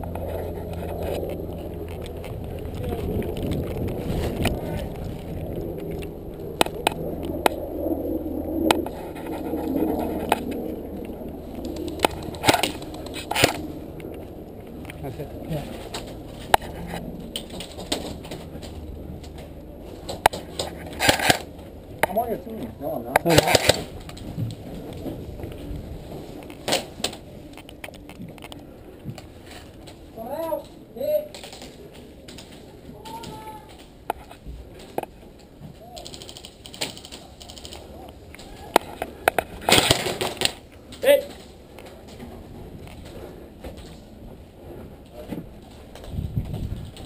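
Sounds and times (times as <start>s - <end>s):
low background rumble: 0.0s - 47.0s
rustling of movement and gear: 0.0s - 47.0s
sharp clicks and knocks: 8.7s - 15.0s
airsoft gun shots: 23.3s - 23.9s.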